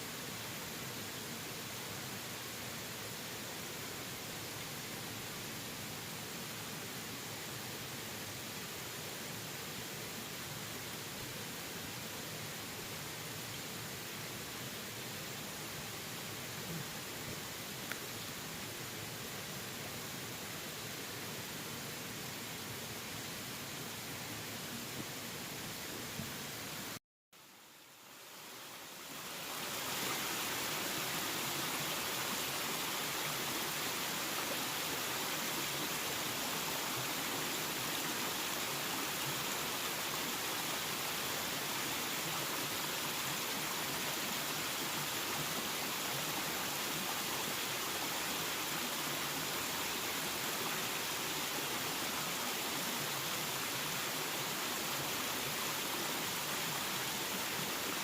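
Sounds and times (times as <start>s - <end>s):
waterfall rushing: 28.8s - 58.0s.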